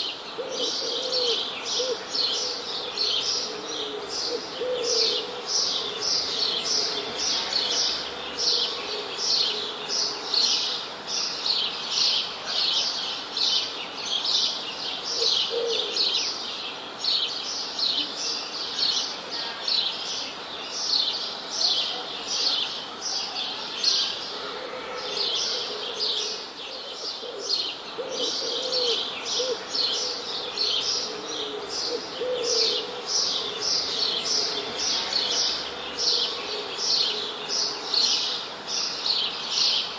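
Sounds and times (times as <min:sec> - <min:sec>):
birds chirping: 0:19.7 - 0:39.9.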